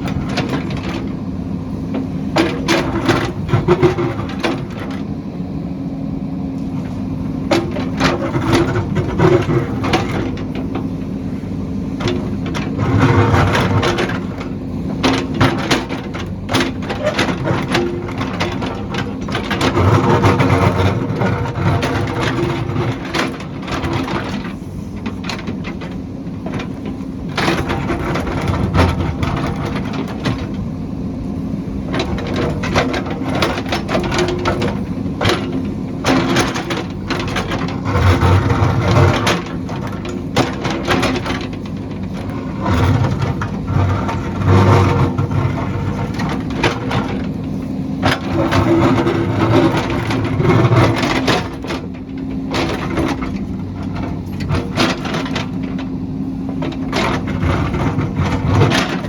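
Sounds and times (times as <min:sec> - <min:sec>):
heavy machine engine running: 0:00.0 - 0:59.0.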